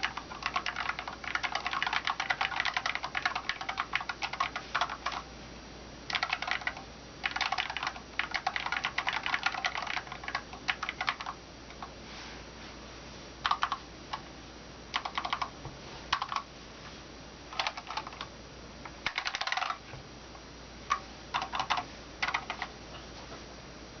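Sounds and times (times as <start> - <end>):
keyboard typing: 0.0 - 5.3, 6.1 - 11.8, 13.4 - 14.2, 14.9 - 15.5, 16.1 - 16.5, 17.5 - 18.3, 19.0 - 19.8, 20.9 - 22.7.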